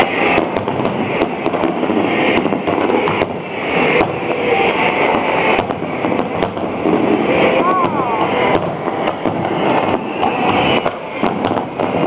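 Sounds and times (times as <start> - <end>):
fireworks rumble and cracks: 0.0 - 12.0.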